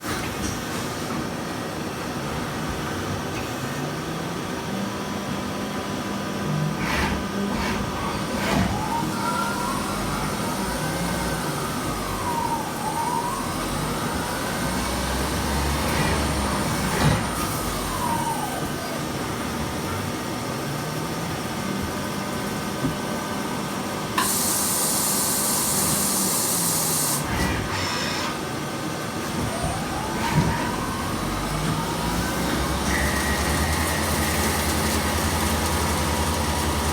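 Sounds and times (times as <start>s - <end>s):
axis drives whirring: 6.5s - 20.1s, 27.2s - 36.9s.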